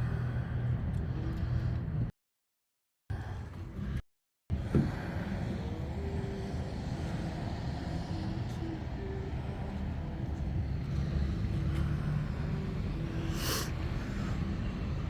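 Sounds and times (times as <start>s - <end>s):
low rumble of road traffic: 0.0s - 2.1s, 3.1s - 15.0s.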